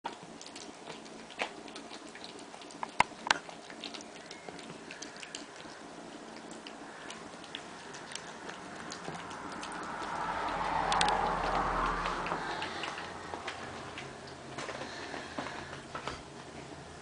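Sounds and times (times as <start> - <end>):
kittens chewing and crunching food: 0.0 - 17.0.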